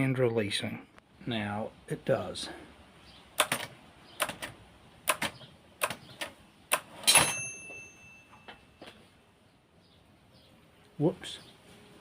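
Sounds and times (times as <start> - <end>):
typewriter clacking: 3.4 - 7.4
typewriter carriage bell: 7.0 - 8.8.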